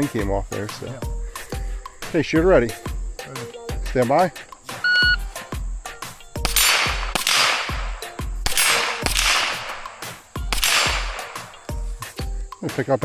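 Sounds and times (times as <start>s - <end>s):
background music with beat: 0.0s - 13.0s
echoing gunshots: 6.4s - 11.7s.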